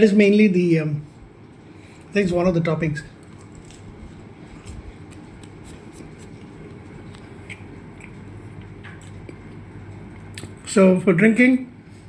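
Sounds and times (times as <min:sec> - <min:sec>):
steady low hum: 0:00.0 - 0:12.0
person eating pizza: 0:03.1 - 0:10.8.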